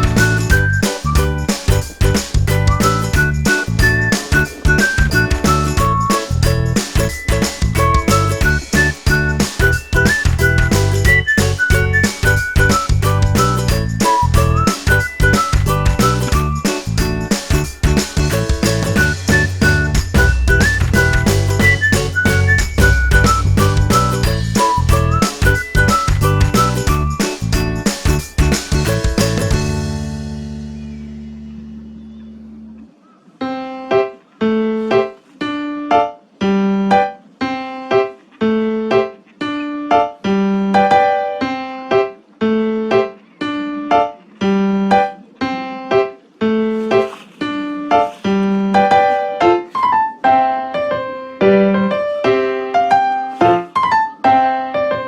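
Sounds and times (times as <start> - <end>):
keyboard playing repeating figure: 0.0 - 30.0.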